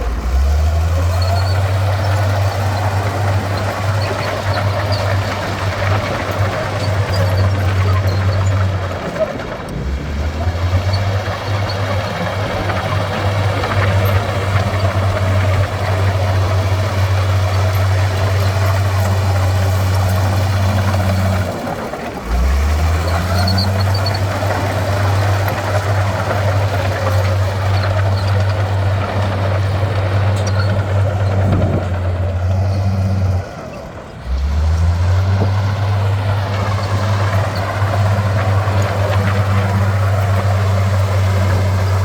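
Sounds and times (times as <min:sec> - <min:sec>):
diesel engine droning under load: 0:00.0 - 0:42.0.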